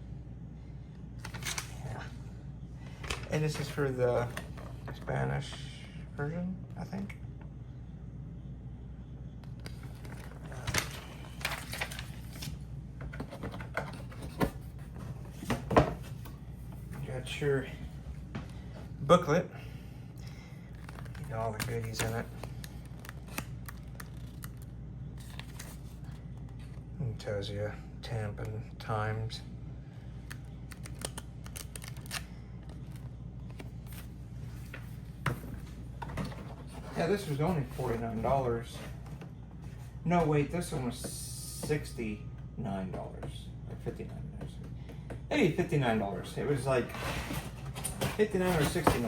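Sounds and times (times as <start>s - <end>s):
steady low hum: 0.0s - 49.0s
paper rustling: 9.7s - 17.0s, 20.7s - 26.8s, 30.3s - 39.8s, 46.8s - 49.0s.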